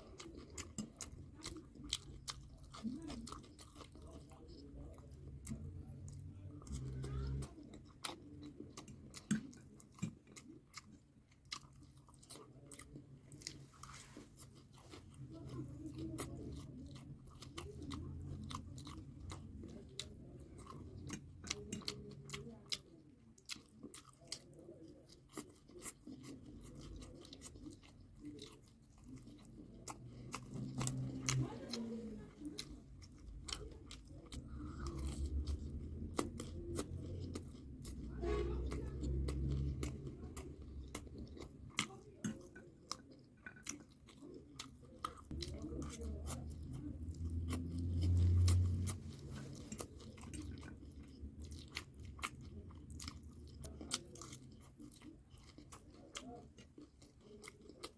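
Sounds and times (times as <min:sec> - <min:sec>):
person chewing and crunching food: 0:00.0 - 0:57.9.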